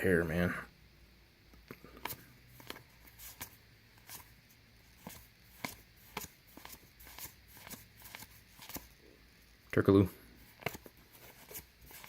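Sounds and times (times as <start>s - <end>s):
cards clicking and tapping: 1.7s - 4.3s, 5.0s - 8.9s, 10.6s - 12.0s.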